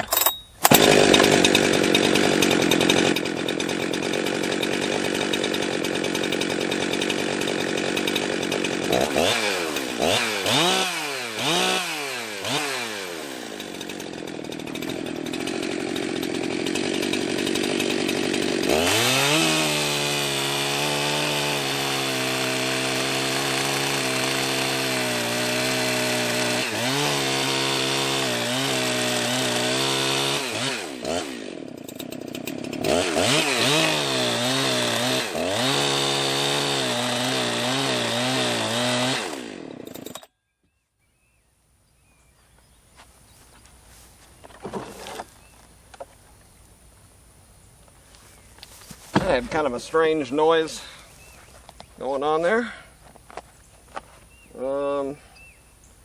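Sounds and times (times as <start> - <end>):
chainsaw engine revving: 0.0 - 40.3, 44.5 - 45.4, 49.2 - 51.1.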